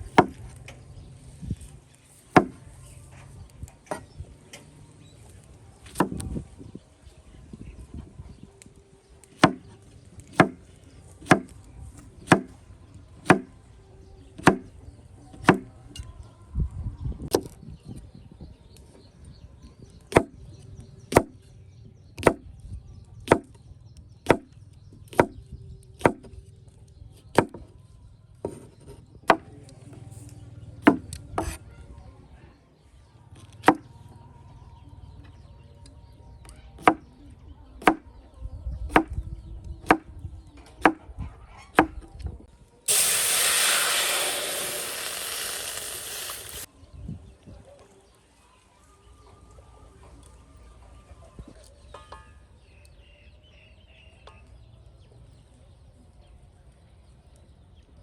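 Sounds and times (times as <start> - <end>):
knife chopping on wooden board: 2.4 - 2.6, 10.3 - 10.6, 11.2 - 11.5, 13.3 - 13.5, 14.4 - 14.7.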